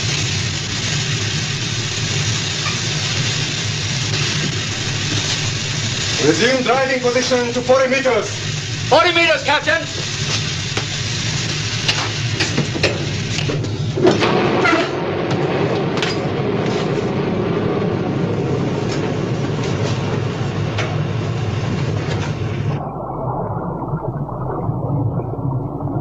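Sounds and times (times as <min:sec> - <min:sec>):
machinery rumble: 0:00.0 - 0:26.0.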